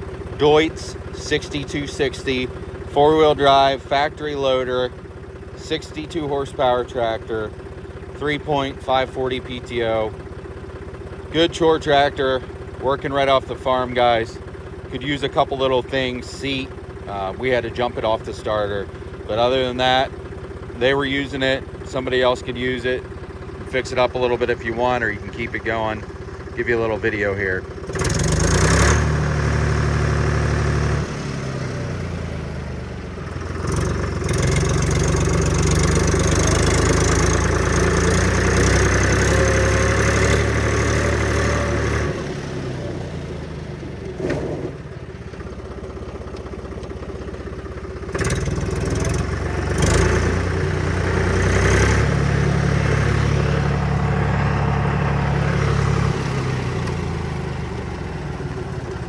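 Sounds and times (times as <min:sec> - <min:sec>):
tractor diesel engine running: 0:00.0 - 0:59.0.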